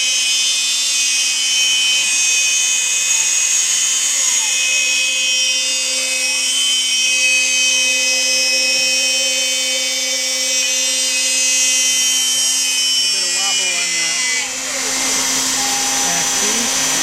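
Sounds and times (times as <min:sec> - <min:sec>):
router spindle whine: 0:00.0 - 0:17.0
stepper motors whining glides: 0:00.0 - 0:17.0.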